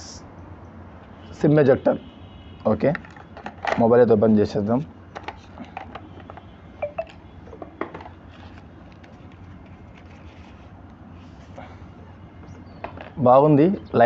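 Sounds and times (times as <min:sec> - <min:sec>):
clicks of phone packaging handled: 0:05.2 - 0:06.5.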